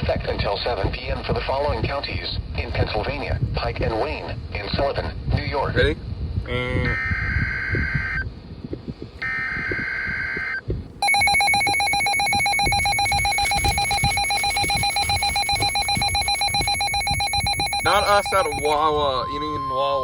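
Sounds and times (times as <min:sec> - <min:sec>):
screeching digital data burst: 0:11.0 - 0:18.8
two-tone buzzing attention signal: 0:11.0 - 0:18.8.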